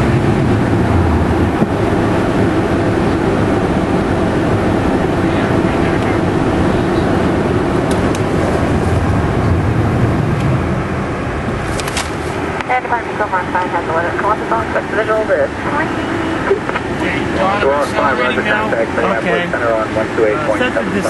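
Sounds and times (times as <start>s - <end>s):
cockpit airflow: 0.0s - 21.0s
jet engines droning: 0.0s - 21.0s.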